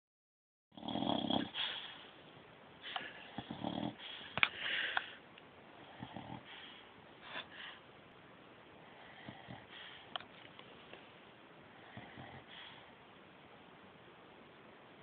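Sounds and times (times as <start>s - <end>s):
puppy snoring: 0.7s - 2.1s, 3.0s - 4.4s, 5.8s - 7.5s, 8.8s - 10.1s, 11.7s - 12.9s.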